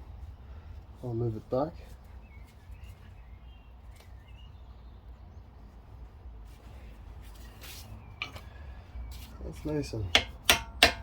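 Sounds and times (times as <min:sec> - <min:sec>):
bird chirps: 0:02.0 - 0:05.5.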